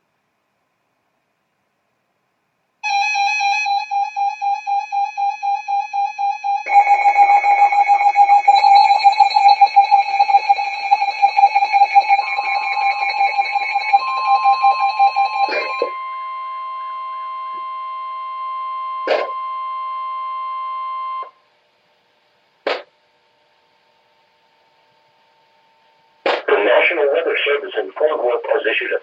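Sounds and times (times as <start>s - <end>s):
steady long tone: 2.8s - 21.2s
pulsing electronic beeping alarm: 2.8s - 21.3s
buzzy pulsing tone: 6.6s - 17.6s.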